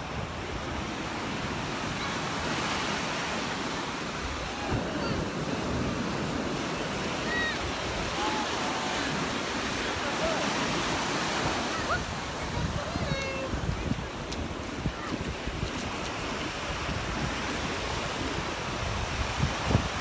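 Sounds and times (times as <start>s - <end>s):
surf washing onto beach: 0.0s - 20.0s
wind on microphone: 4.0s - 20.0s.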